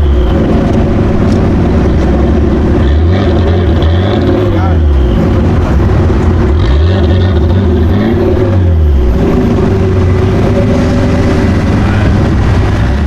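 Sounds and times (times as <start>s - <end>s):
sports car engine accelerating: 0.0s - 13.0s.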